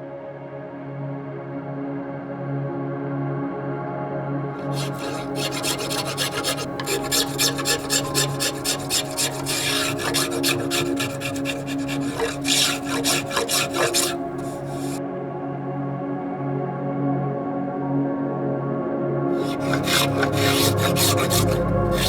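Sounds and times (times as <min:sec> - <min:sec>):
hand tool rasping wood: 0:04.6 - 0:15.0, 0:19.4 - 0:22.0.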